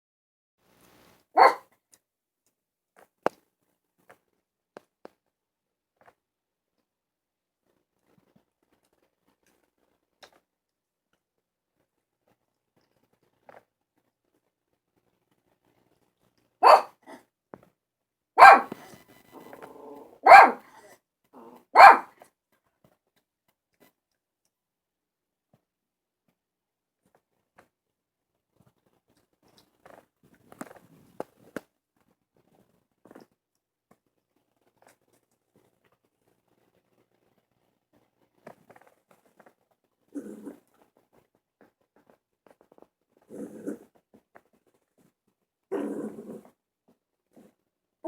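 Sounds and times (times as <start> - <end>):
dog barking: 1.4 - 1.7, 16.6 - 17.2, 18.4 - 22.2
soft low dog sounds: 1.4 - 1.7, 16.6 - 17.3, 18.4 - 22.3, 28.5 - 47.7.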